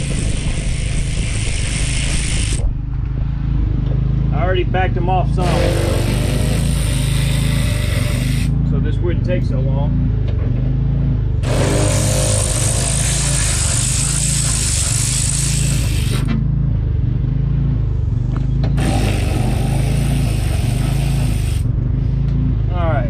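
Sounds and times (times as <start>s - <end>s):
power ratchet running: 0.0s - 2.8s, 5.4s - 8.6s, 11.4s - 16.4s, 18.7s - 21.8s
steady low hum: 0.0s - 23.0s.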